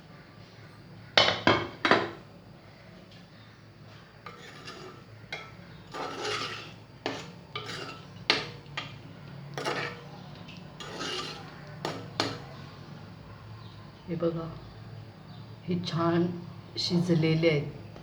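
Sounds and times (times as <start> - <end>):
metal scraping and rubbing: 4.3 - 8.9, 9.5 - 12.6.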